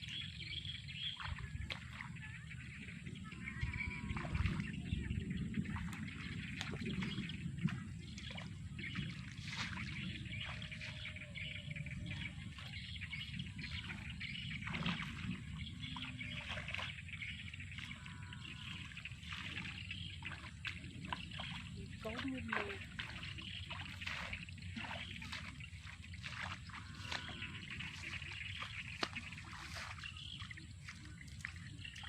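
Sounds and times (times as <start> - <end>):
faint bird chirps: 0.0 - 32.0
water trickling and splashing: 0.0 - 32.0.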